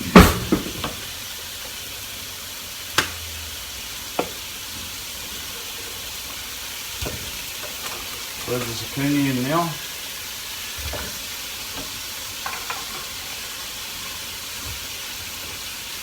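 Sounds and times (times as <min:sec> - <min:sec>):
chicken sizzling in a pan: 0:00.0 - 0:16.0
sharp knocks against a pan: 0:00.1 - 0:01.0, 0:03.0 - 0:03.2.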